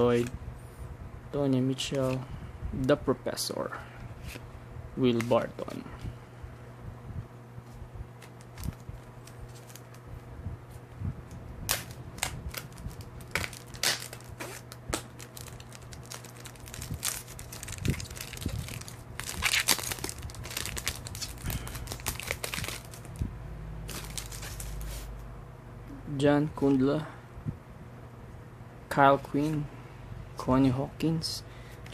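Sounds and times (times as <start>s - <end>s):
steady low hum: 0.0s - 31.9s
wrapper crinkling and tearing: 8.2s - 10.0s, 11.7s - 23.2s, 23.9s - 25.1s.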